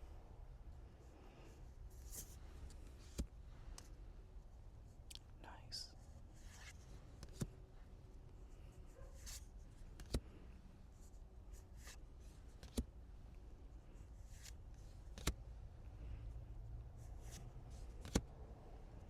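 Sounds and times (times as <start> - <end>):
cards sliding and rustling: 1.9 - 4.0, 6.3 - 7.6, 8.5 - 10.4, 11.0 - 12.9, 14.2 - 15.4, 17.0 - 18.3.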